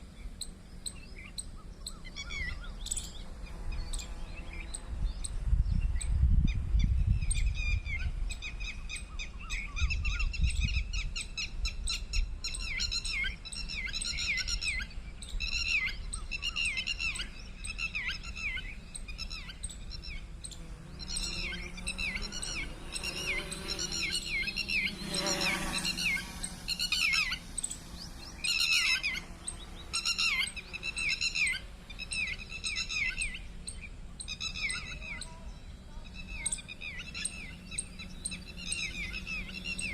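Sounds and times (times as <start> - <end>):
birds chirping: 0.0 - 39.9
steady low hum: 14.9 - 39.9.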